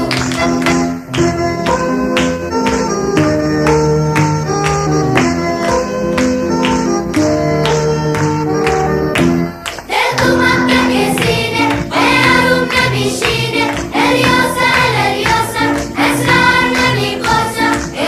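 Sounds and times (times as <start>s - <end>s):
instrumental music: 0.0s - 18.0s
voices singing over a beat: 9.9s - 18.0s.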